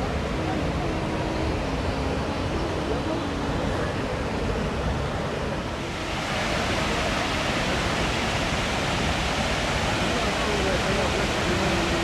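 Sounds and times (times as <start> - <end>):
waterfall rushing: 5.7 - 12.0.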